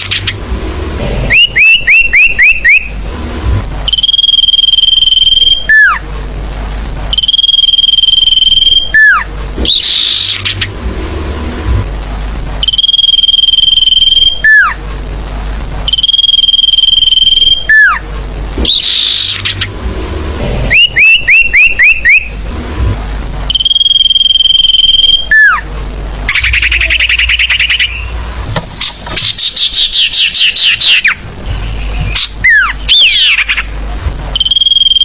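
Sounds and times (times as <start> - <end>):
bird buzzy trills: 0.0 - 6.1, 7.1 - 11.7, 12.6 - 14.9, 15.8 - 22.6, 23.4 - 35.0
bird high whistle: 1.3 - 3.0, 3.9 - 6.0, 7.1 - 10.6, 12.6 - 14.8, 15.9 - 18.0, 18.6 - 19.7, 20.7 - 22.3, 23.5 - 25.6, 26.3 - 28.2, 29.2 - 33.6, 34.4 - 35.0.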